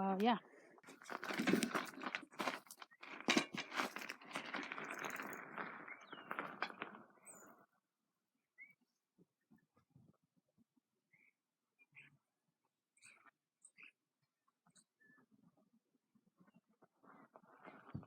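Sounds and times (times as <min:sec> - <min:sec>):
rustling and crunching: 0:00.8 - 0:07.4.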